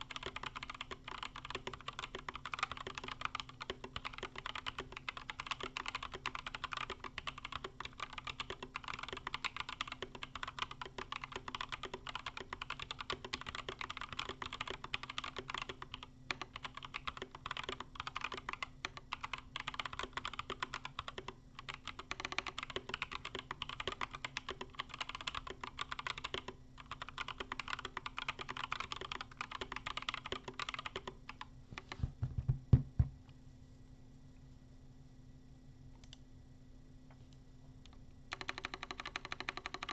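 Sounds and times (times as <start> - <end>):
typing on mechanical keyboard: 0.0 - 32.1, 38.3 - 39.9
heavy thumps: 31.8 - 33.2.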